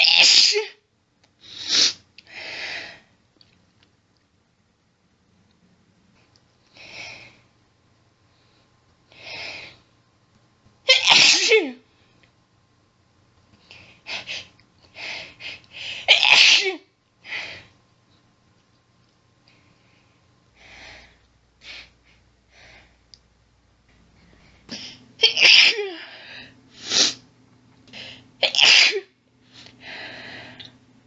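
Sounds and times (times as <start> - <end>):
woman sneezing: 0.0 - 0.8, 10.9 - 11.8, 16.1 - 16.8, 24.7 - 26.0, 28.4 - 29.1
catches of breath: 29.5 - 30.8.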